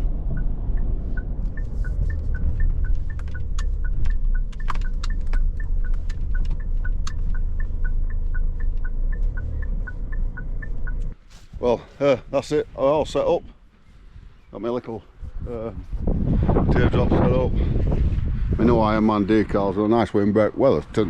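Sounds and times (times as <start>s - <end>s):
car cabin rumble: 0.0s - 11.2s
irregular knocks and clicks: 0.0s - 11.2s
rapid even ticking: 0.0s - 11.2s.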